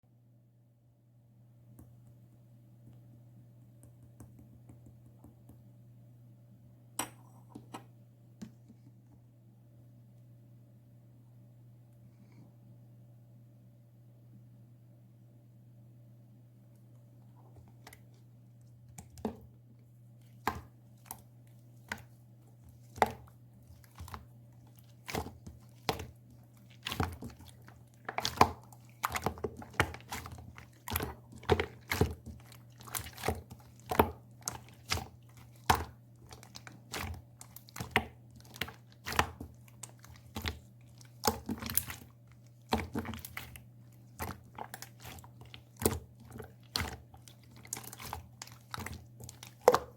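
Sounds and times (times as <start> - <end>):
slime squished by hand: 22.8 - 49.9.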